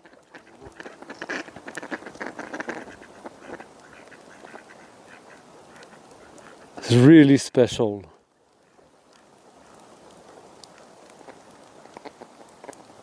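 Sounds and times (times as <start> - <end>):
ducks quacking: 0.0 - 6.9, 11.2 - 12.8.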